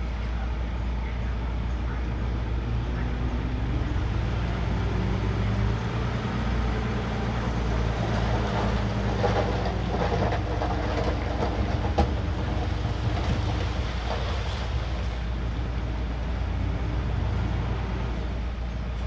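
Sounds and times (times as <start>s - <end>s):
diesel engine running: 0.0s - 19.0s
bulldozer tracks clanking: 1.6s - 16.4s.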